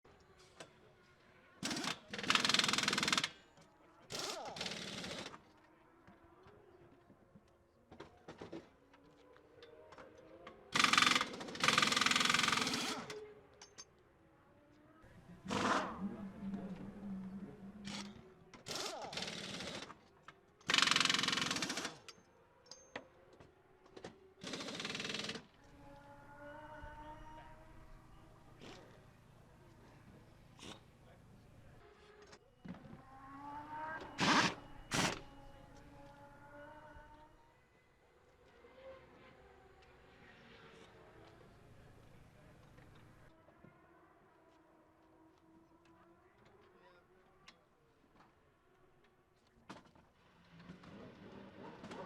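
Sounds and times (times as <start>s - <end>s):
pneumatic impact wrench rattling: 1.6s - 3.4s, 10.8s - 13.1s, 20.6s - 22.0s.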